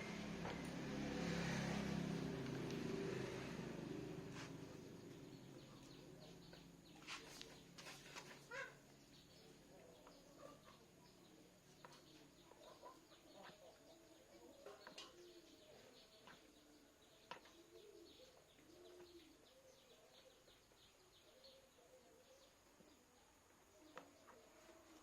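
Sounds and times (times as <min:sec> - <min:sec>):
faint chirps: 0:03.3 - 0:25.0
bird cooing: 0:12.1 - 0:22.5.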